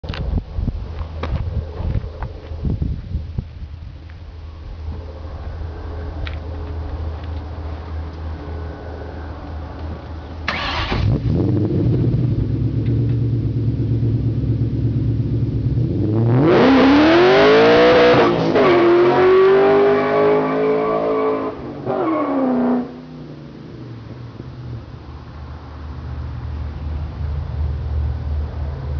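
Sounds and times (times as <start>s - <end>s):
car engine idling and revving: 4.8s - 28.9s.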